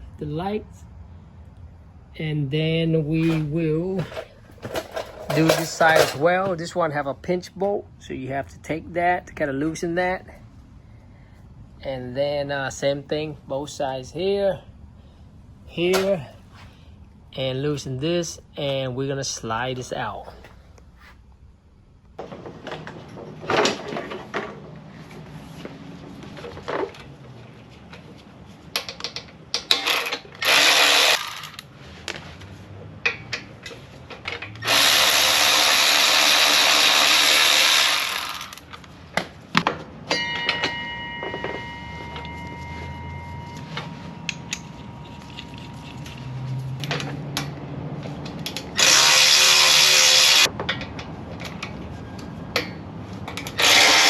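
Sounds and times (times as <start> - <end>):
metal parts clanking: 3.1 - 6.6, 28.8 - 31.6
cordless power tool running: 29.8 - 31.6, 34.6 - 38.6, 48.8 - 50.5, 53.6 - 54.0.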